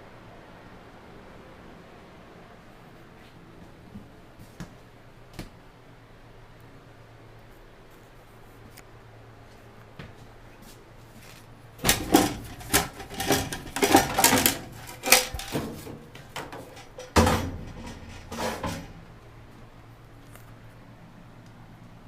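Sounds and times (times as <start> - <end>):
irregular knocks and rattles: 11.8 - 19.2.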